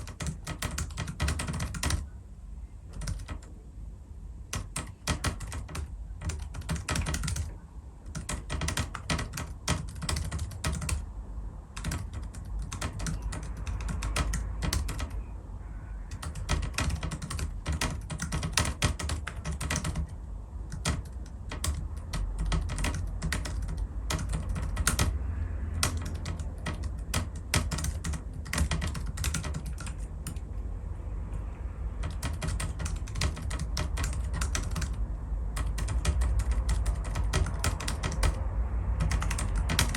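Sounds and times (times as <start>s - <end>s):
keyboard key clicks: 0.0s - 2.0s, 4.5s - 7.5s, 8.1s - 11.0s, 16.1s - 25.2s, 25.8s - 30.4s, 32.0s - 38.4s, 39.0s - 39.9s.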